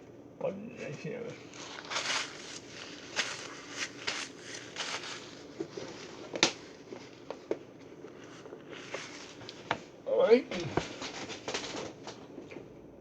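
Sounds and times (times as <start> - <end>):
soft shuffling: 0.8 - 9.9.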